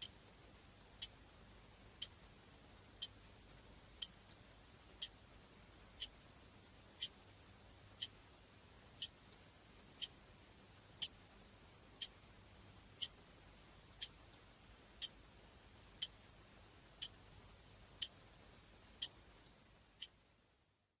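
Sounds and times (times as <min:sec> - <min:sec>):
clock ticking: 0:01.0 - 0:01.2, 0:02.0 - 0:02.2, 0:03.0 - 0:03.2, 0:04.0 - 0:04.2, 0:06.0 - 0:06.2, 0:08.0 - 0:08.2, 0:13.0 - 0:13.2, 0:14.0 - 0:14.2, 0:17.0 - 0:17.2.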